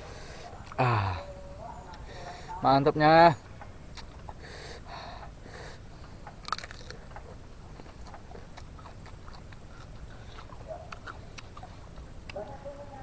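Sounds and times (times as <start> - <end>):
person biting and chewing: 3.9 - 4.3, 6.3 - 12.4
mouth clicks: 3.9 - 12.6.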